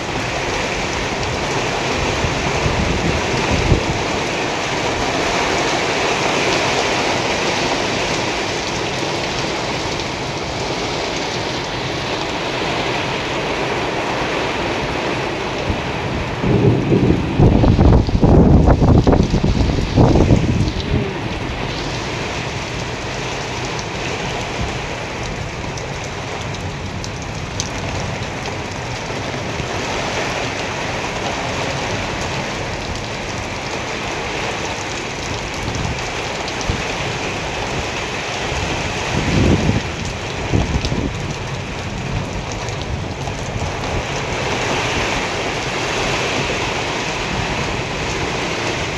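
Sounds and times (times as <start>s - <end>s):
heavy rain falling: 0.0s - 48.9s
low rumbles: 15.6s - 23.8s.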